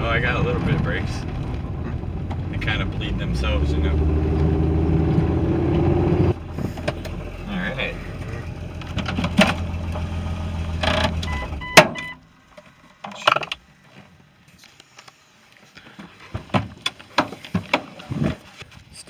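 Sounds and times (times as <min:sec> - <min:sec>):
car engine idling with knock: 0:00.0 - 0:12.2.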